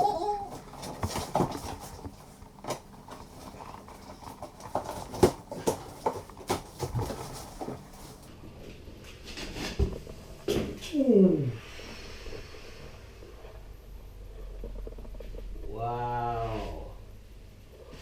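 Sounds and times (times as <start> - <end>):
cardboard box being opened: 0.0 - 8.3.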